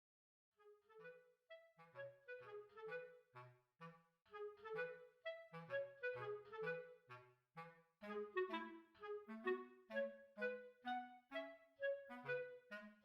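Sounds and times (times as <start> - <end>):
woodwind melody: 0.6 - 13.0.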